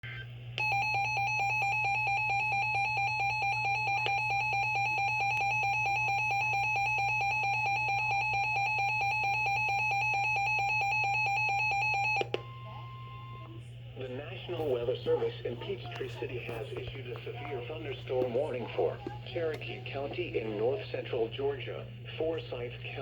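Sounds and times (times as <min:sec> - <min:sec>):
electronic two-tone alarm: 0:00.6 - 0:13.5.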